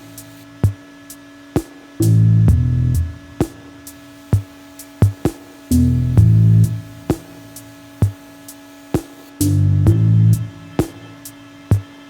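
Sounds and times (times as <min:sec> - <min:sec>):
steady drum beat: 0:00.0 - 0:12.0
held bass note: 0:02.0 - 0:03.4, 0:05.7 - 0:07.1, 0:09.4 - 0:10.8.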